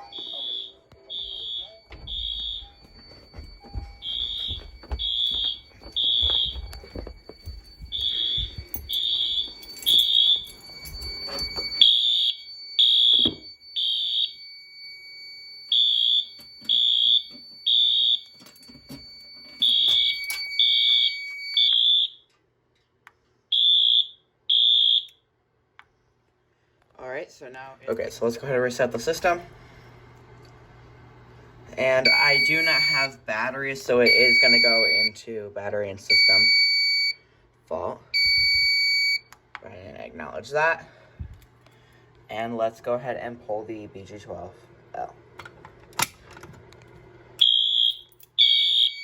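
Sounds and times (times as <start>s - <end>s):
steady high tone: 0.0s - 11.8s
fire alarm beeping: 0.0s - 22.4s, 23.5s - 25.3s, 31.8s - 35.2s, 36.0s - 37.3s, 38.1s - 39.4s, 47.4s - 49.0s
footsteps thumping: 1.2s - 11.2s.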